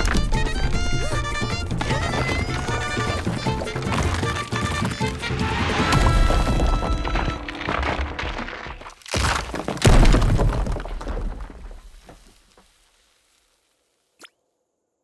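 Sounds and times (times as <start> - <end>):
cartoon breaking crash: 5.4 - 8.5.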